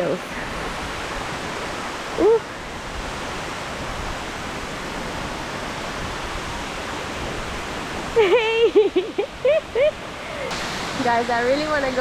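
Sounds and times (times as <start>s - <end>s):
waterfall roar: 0.0s - 12.0s.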